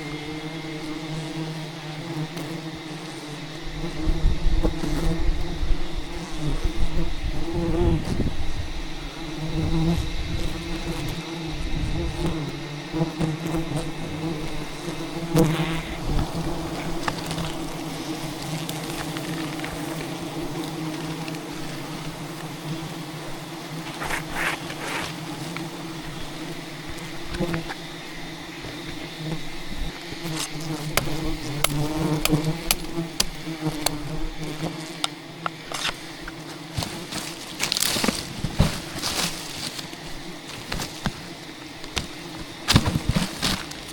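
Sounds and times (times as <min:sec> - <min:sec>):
bees buzzing: 0:00.0 - 0:43.9
bees striking camera ticks: 0:27.3 - 0:27.8, 0:30.2 - 0:35.6.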